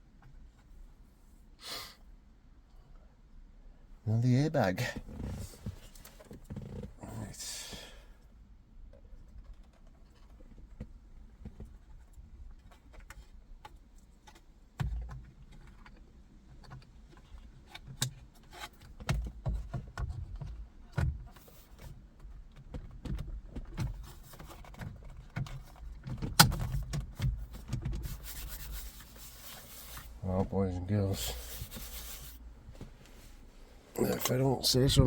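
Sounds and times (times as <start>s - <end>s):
clicks and knocks on steering wheel: 4.8s - 7.0s, 8.9s - 30.6s.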